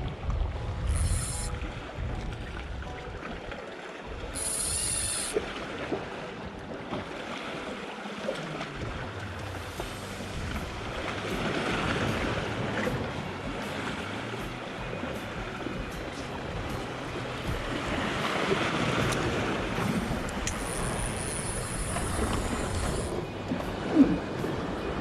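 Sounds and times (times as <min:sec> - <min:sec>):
wind buffeting microphone: 0:00.0 - 0:03.5
sea waves washing against rocks: 0:00.0 - 0:25.0.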